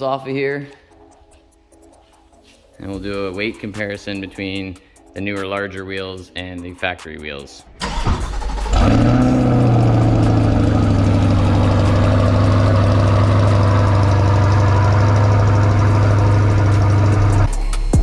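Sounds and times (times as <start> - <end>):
motor humming steadily: 10.4 - 17.5.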